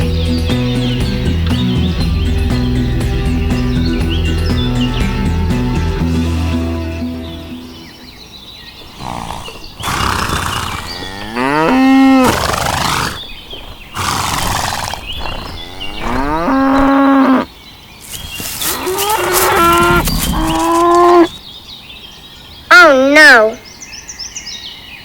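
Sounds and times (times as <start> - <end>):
cattle mooing: 8.9 - 13.2, 14.0 - 17.5, 18.3 - 21.3.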